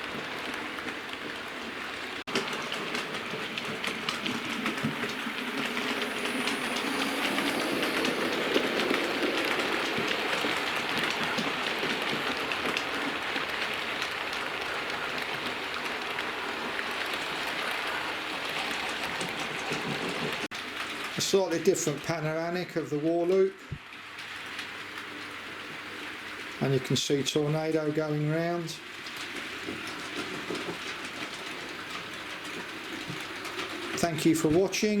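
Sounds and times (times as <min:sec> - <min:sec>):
model train rumbling: 0:00.0 - 0:35.0
wheels clicking over rail joints: 0:00.0 - 0:35.0.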